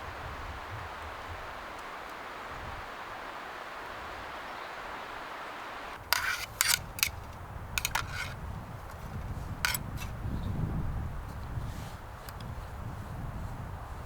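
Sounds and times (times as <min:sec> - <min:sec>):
breeze rustling: 0:00.0 - 0:14.0
utensils and containers clattering: 0:06.1 - 0:10.1.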